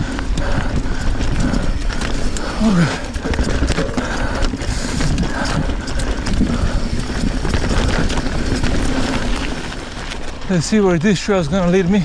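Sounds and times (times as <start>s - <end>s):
bike rattling over bumps: 0.0s - 12.0s
bike tyres on dirt: 0.0s - 12.0s
wind rumble on microphone: 0.0s - 12.0s.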